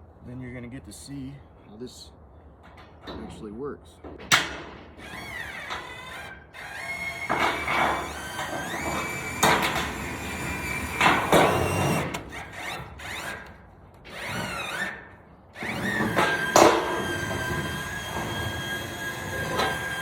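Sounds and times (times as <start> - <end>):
panel cutter motor whine: 5.0 - 13.5, 15.6 - 20.0.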